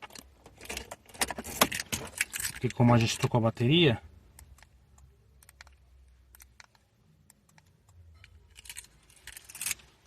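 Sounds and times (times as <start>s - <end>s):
car keys rattling: 0.0s - 3.7s, 7.7s - 10.0s.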